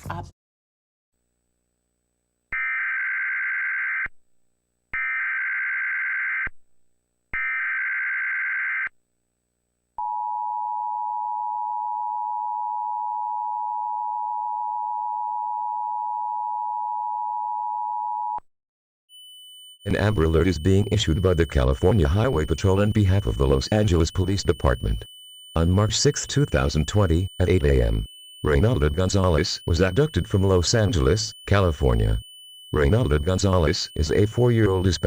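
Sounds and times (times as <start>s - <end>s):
data tone bursts: 19.1s - 35.0s
two-tone attention signal: 19.1s - 35.0s.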